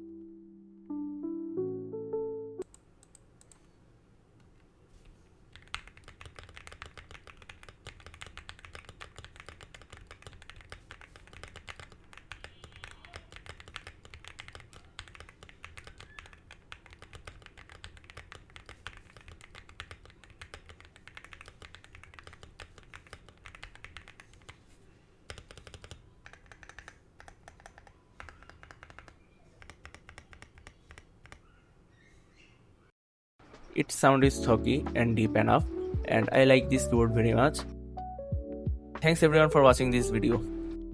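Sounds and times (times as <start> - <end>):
deep mechanical keyboard typing: 5.5 - 24.6, 25.3 - 31.5.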